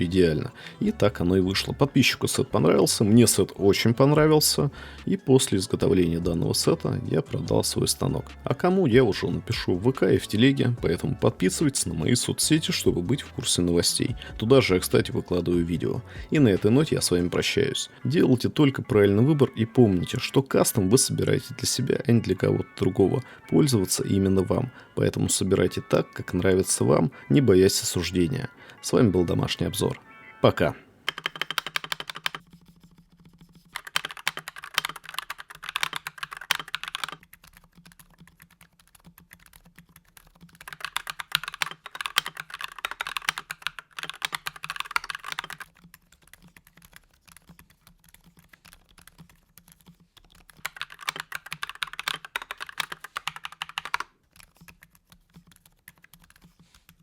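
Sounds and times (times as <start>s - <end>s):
typing on a mechanical keyboard: 31.1s - 57.0s.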